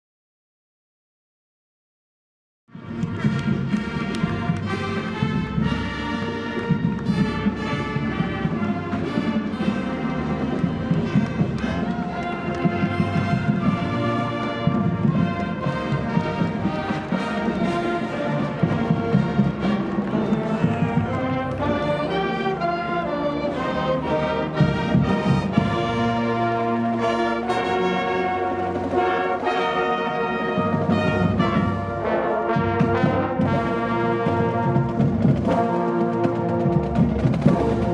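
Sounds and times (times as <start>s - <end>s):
brass playing a tune: 2.7s - 37.9s
drum-line beat: 2.8s - 22.2s, 24.0s - 37.9s.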